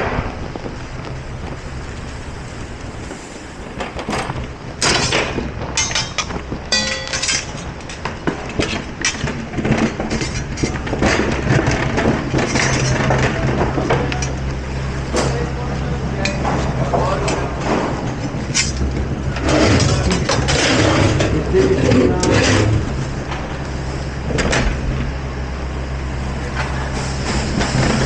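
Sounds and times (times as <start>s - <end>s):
low machine drone: 0.0s - 28.0s
dishes and utensils clattering: 4.0s - 14.4s.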